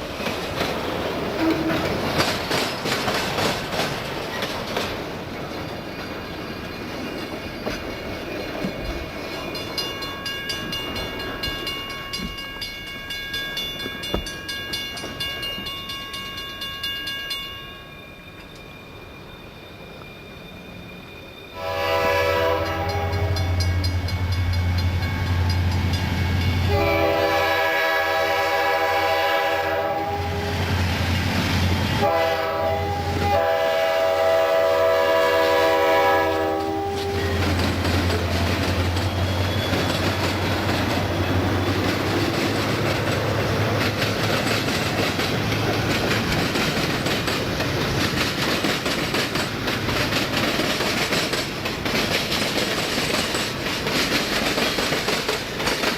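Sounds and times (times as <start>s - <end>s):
train cars rumbling and clacking: 0.0s - 55.9s
locomotive air horn blasts: 1.4s - 2.0s, 21.6s - 23.6s, 26.7s - 30.7s, 32.0s - 37.5s.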